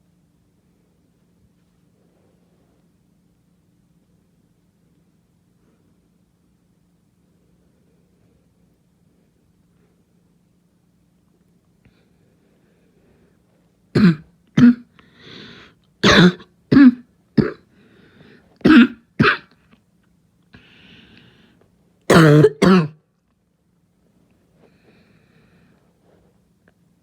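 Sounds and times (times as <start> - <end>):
person barking cough: 14.0 - 14.9, 16.0 - 17.6, 18.6 - 19.6, 22.1 - 23.0.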